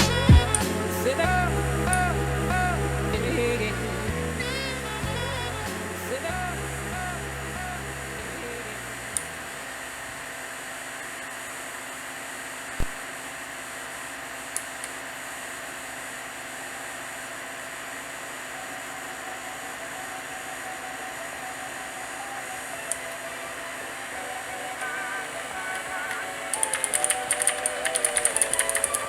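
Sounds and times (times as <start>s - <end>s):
steady background hiss: 0.0s - 29.0s
faint clicks: 24.8s - 29.0s.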